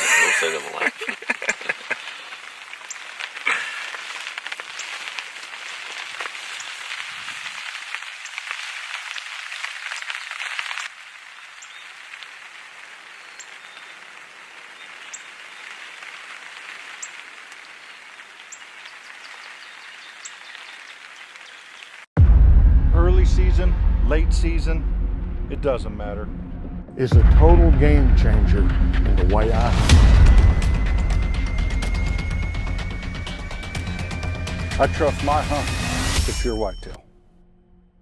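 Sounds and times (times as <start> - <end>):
steady rain hiss: 0.0 - 22.1
raindrop clicks: 1.0 - 22.1.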